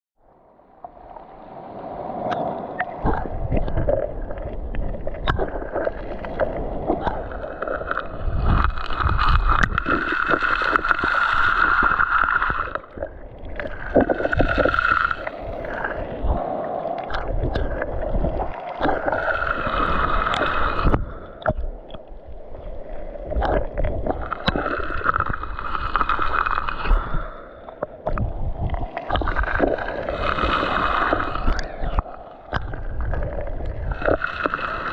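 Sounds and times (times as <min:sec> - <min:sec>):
sea water sloshing and gurgling: 0:00.2 - 0:34.9.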